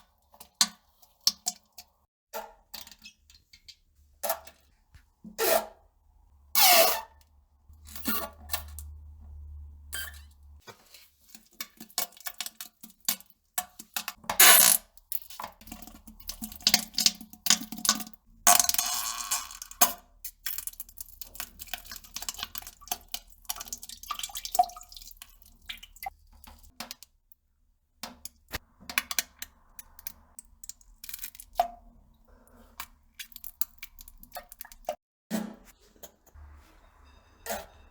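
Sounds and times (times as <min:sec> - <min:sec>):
person farting: 0:14.4 - 0:14.8.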